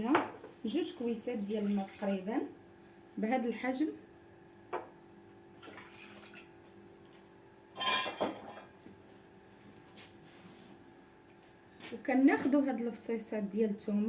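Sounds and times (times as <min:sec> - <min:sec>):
water pouring into a pot: 0:01.4 - 0:02.3, 0:05.6 - 0:06.5.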